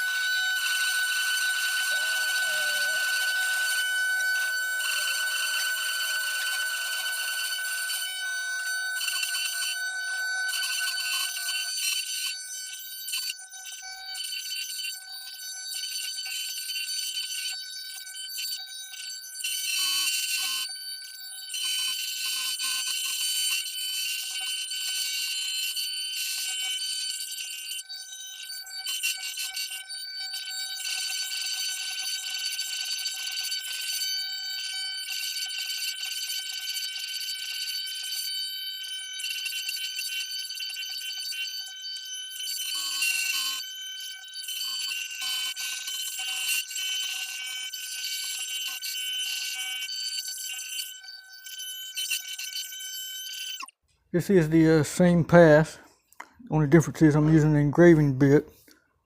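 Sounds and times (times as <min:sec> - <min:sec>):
bit rasping through wood: 0:00.0 - 0:12.4
router bit cutting wood: 0:00.0 - 0:18.3, 0:19.4 - 0:53.7
router spindle whine: 0:00.0 - 0:53.8.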